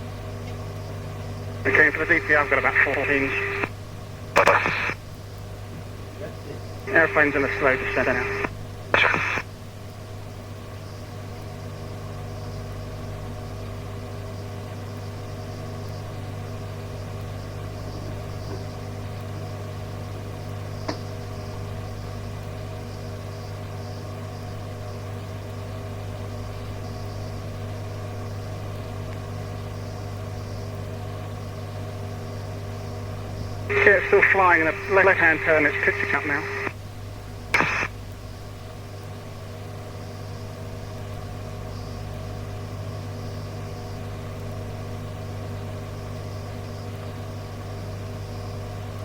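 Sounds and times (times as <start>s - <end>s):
electrical hum: 0.0s - 49.0s
faint radio hiss: 0.4s - 13.8s, 26.2s - 44.0s.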